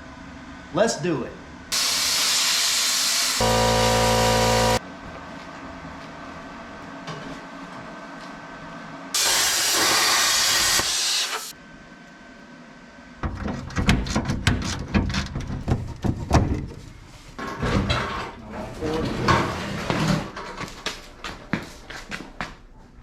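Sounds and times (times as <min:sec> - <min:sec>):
plasma cutter torch hissing air: 0:01.7 - 0:04.8, 0:09.2 - 0:11.5.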